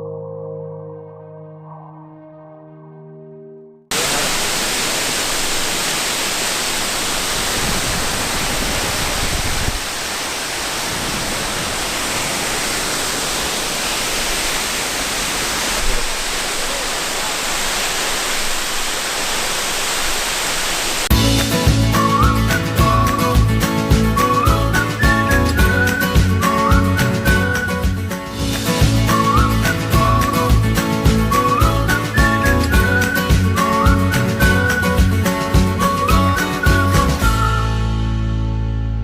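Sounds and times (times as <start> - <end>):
waterfall rushing: 3.9 - 23.4.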